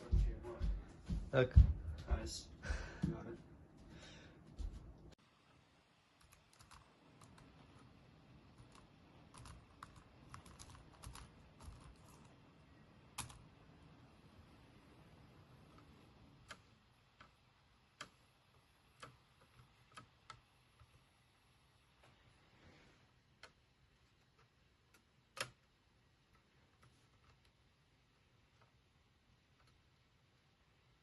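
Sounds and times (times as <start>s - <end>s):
typing on laptop keyboard: 6.2s - 7.8s, 8.6s - 12.3s, 13.2s - 13.5s, 15.7s - 21.0s, 23.4s - 27.6s.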